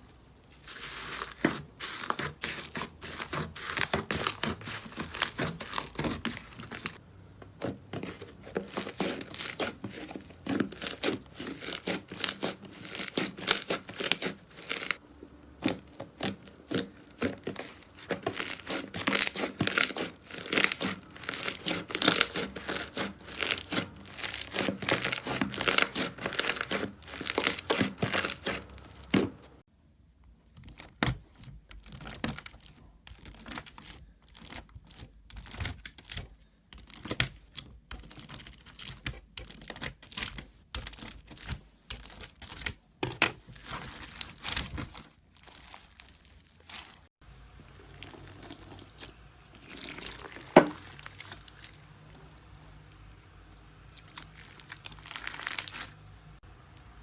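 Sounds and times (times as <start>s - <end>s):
slime crackling and popping: 0.6s - 29.6s, 53.9s - 56.0s.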